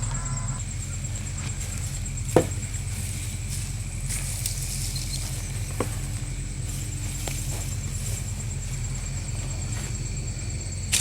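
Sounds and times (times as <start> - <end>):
faint high whine: 0.0 - 5.4
low background rumble: 0.0 - 11.0.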